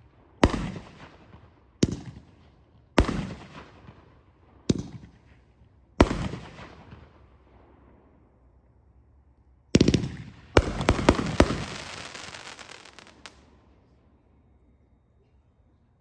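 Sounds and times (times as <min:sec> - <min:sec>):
firework bangs overhead: 0:09.9 - 0:13.3.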